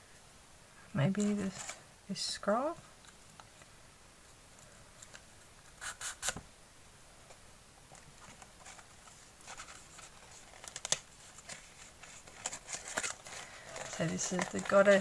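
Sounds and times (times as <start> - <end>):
paper scroll rustling: 8.2 - 15.0.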